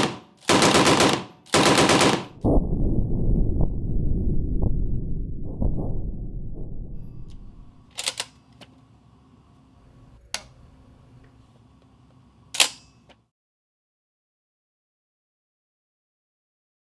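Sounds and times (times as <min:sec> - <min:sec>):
low rumble: 0:02.4 - 0:07.9
machine gun metallic clacks: 0:07.9 - 0:08.4, 0:12.6 - 0:13.0.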